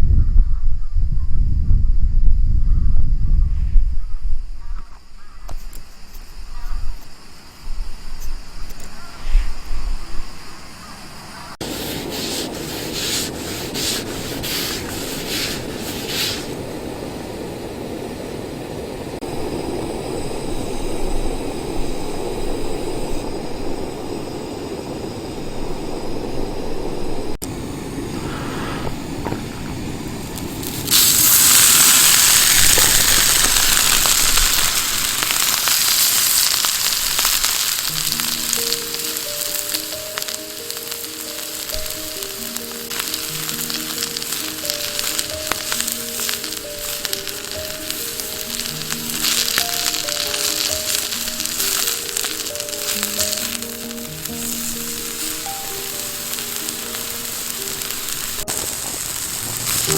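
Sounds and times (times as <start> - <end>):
low rushing noise: 9.5 - 59.9
scraping strokes: 11.4 - 16.6
food sizzling in a pan: 11.5 - 17.3, 28.2 - 59.9
soft music notes: 36.4 - 59.9.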